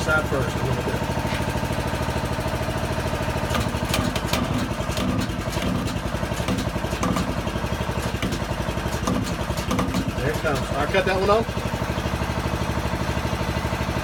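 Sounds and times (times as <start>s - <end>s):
small engine running: 0.0s - 14.0s.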